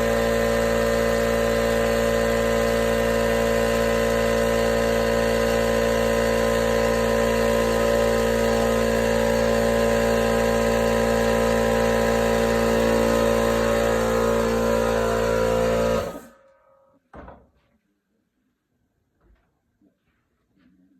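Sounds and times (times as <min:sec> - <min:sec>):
air compressor running: 0:00.0 - 0:16.5.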